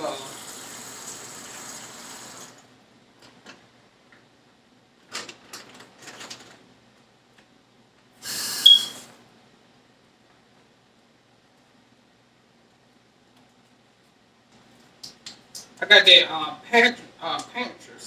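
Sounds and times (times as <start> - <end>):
tap water running: 0.0 - 2.7
sharp high squeak: 8.4 - 9.0.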